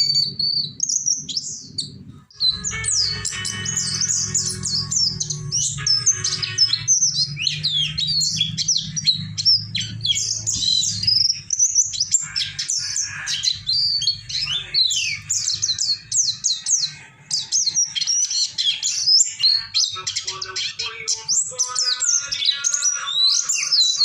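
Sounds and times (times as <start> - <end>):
low hum: 0.0 - 12.3
songbird twittering: 0.0 - 24.0.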